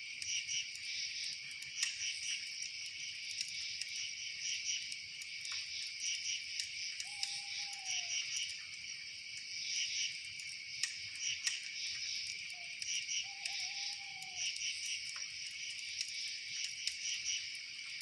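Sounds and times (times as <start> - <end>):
crickets chirping: 0.0 - 18.0.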